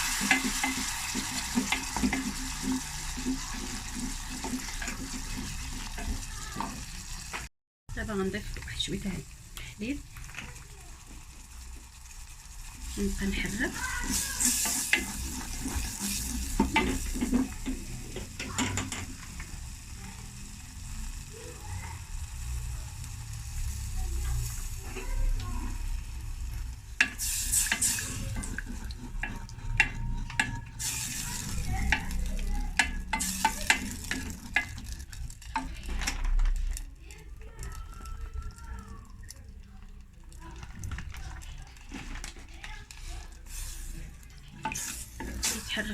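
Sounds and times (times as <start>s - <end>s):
utensil scraping a pan: 0.0s - 7.5s, 12.6s - 19.4s, 26.5s - 36.8s, 40.4s - 45.9s
faint sizzle: 0.0s - 45.9s.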